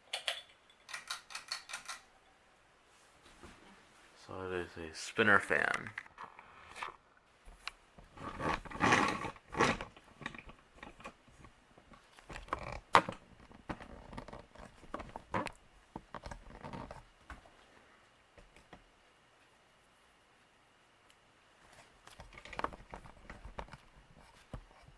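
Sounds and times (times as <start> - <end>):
rustling and knocking handling noise: 5.6 - 17.6, 21.6 - 24.9.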